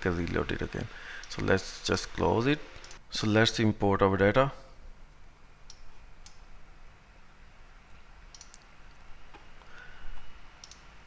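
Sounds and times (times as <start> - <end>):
low room hum: 0.0 - 11.0
computer mouse clicks: 8.3 - 8.7, 10.6 - 10.9.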